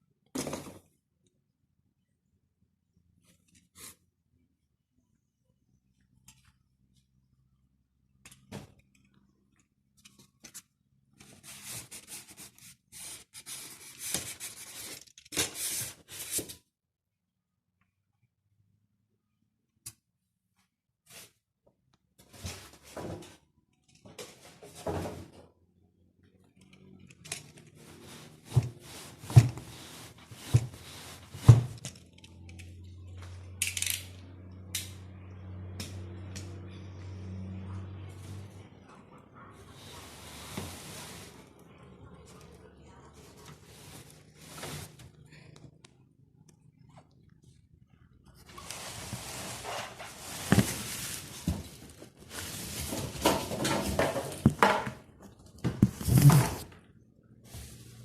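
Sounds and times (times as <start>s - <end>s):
packaging scraping: 48.6s - 53.2s.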